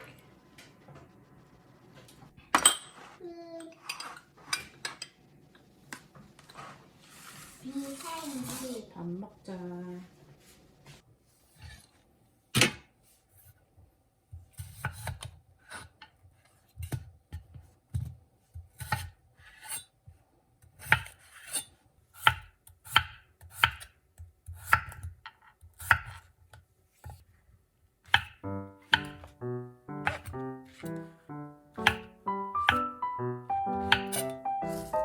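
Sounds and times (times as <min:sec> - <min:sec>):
knife chopping on cutting board: 0:18.7 - 0:19.8, 0:20.8 - 0:21.6, 0:22.2 - 0:26.2, 0:28.1 - 0:29.4, 0:30.0 - 0:31.1, 0:31.8 - 0:32.9, 0:33.7 - 0:35.0.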